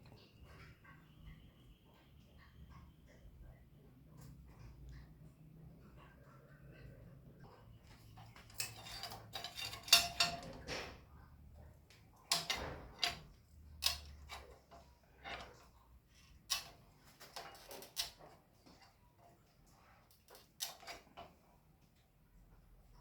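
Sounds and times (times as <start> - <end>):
metallic clinks of bicycle parts: 8.2 - 10.9, 12.3 - 14.5.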